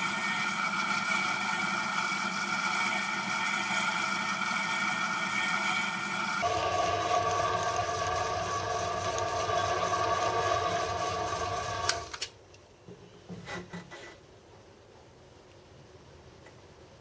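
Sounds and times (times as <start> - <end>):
milling machine whining: 0.0 - 12.2.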